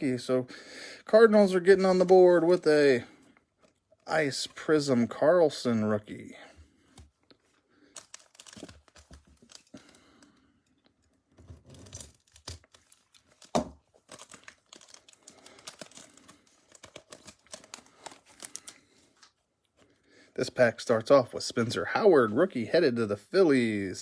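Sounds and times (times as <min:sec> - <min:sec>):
foil wrapper tearing and crinkling: 0:07.8 - 0:10.3, 0:11.7 - 0:18.9.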